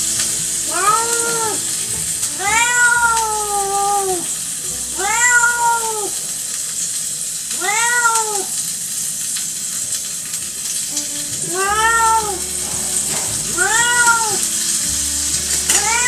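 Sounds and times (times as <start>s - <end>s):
steady high hiss: 0.0s - 16.0s
cat meowing: 0.7s - 1.8s, 2.4s - 4.3s, 5.0s - 6.2s, 7.6s - 8.6s, 11.4s - 12.5s, 13.6s - 14.5s, 15.8s - 16.0s.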